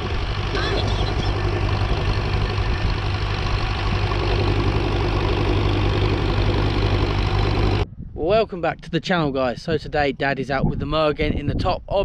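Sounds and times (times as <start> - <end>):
engine running steadily: 0.0 - 7.9.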